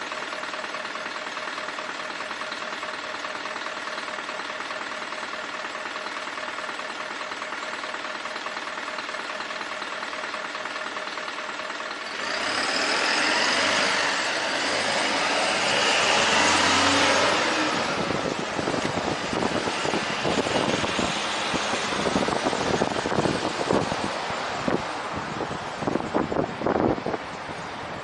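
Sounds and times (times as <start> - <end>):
vehicle passing by: 12.2 - 27.6
wind buffeting microphone: 17.4 - 28.0.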